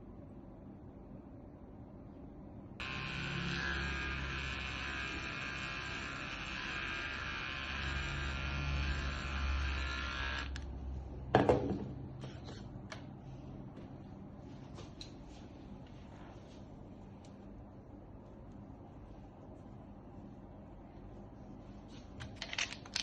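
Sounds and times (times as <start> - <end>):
electric clippers buzzing: 2.8 - 10.7.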